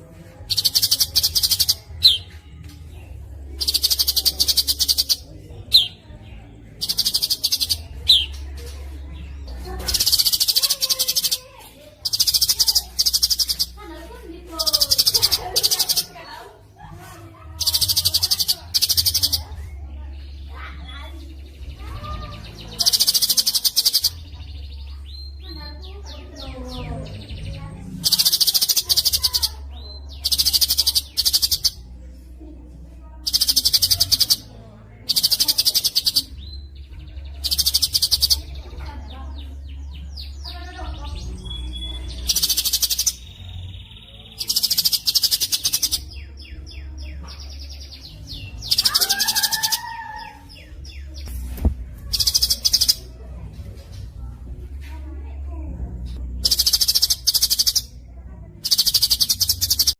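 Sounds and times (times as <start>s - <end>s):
songbird trilling: 0.5s - 2.3s, 3.6s - 6.0s, 6.7s - 8.4s, 9.9s - 11.4s, 12.0s - 13.8s, 14.6s - 16.1s, 17.6s - 19.4s, 22.8s - 24.3s, 28.0s - 31.8s, 33.2s - 34.5s, 35.1s - 36.7s, 37.4s - 38.6s, 41.2s - 46.9s, 47.6s - 51.3s, 52.1s - 53.1s, 56.4s - 58.0s, 58.6s - 59.9s
soft bird chirps: 0.5s - 16.2s, 40.0s - 53.1s, 58.6s - 59.9s.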